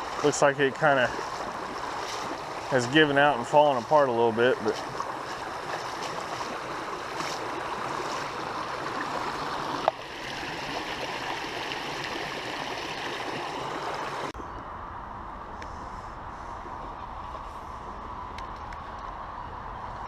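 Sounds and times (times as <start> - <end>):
creek water rushing over dam: 0.0 - 14.3
deep water rumble: 0.0 - 20.0.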